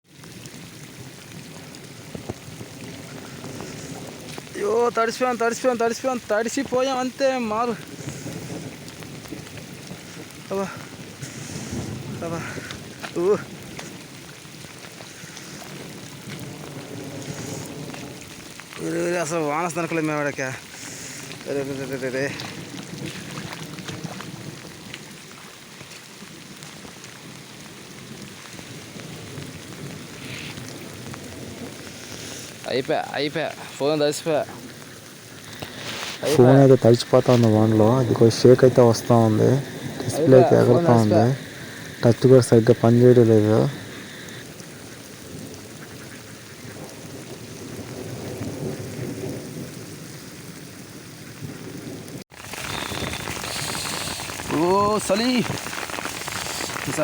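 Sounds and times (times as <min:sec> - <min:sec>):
heavy rain falling: 0:00.0 - 0:57.0.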